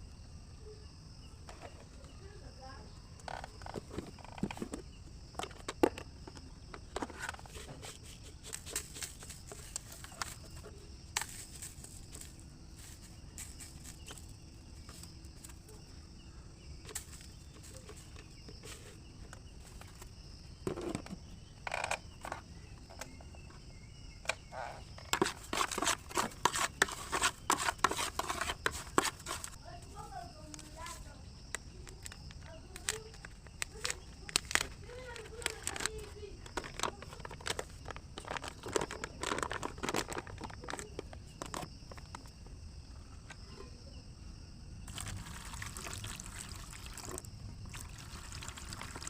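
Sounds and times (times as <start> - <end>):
crickets chirring: 0.0 - 49.0
kitchen work scrapes and knocks: 24.3 - 29.6.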